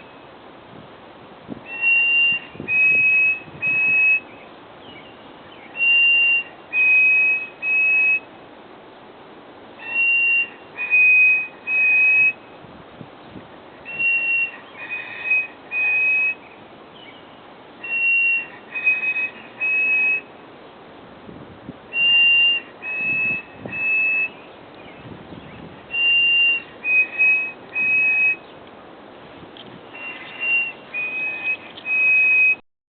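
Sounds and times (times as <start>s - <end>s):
songbird whistling: 1.6s - 8.3s, 9.8s - 12.4s, 13.8s - 20.3s, 21.9s - 28.6s, 29.9s - 32.6s.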